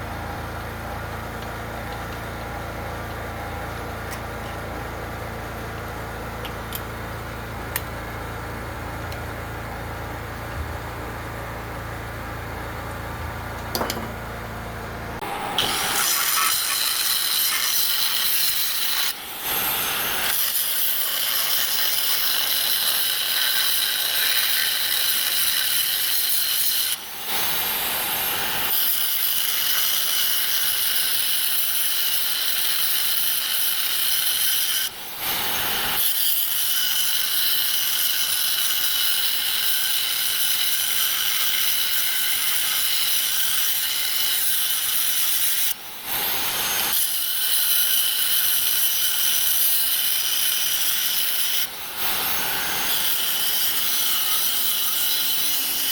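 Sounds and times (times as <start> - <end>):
engine humming: 0.0 - 16.4
power tool grinding steel: 15.2 - 55.9.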